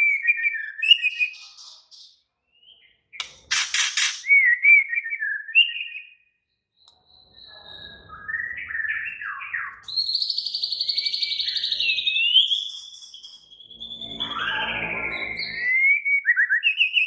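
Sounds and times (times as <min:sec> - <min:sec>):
bird singing whistles and trills: 0:00.0 - 0:03.2, 0:04.0 - 0:17.0.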